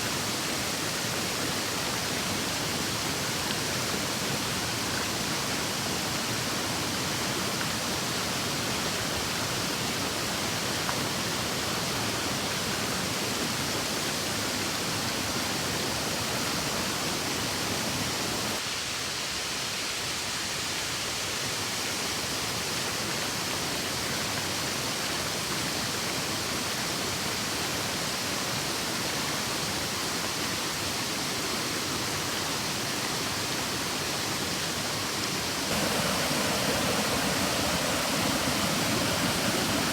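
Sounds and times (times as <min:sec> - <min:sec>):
waterfall rushing: 0:33.5 - 0:39.9.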